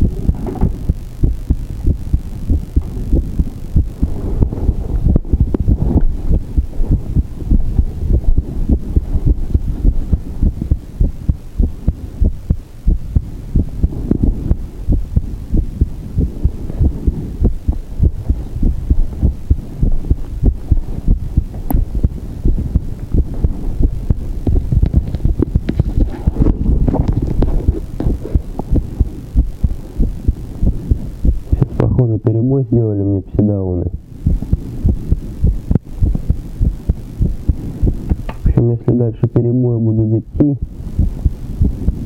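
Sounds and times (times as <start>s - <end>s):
heartbeat thumps: 0.0s - 32.1s, 33.9s - 38.7s, 40.6s - 42.0s.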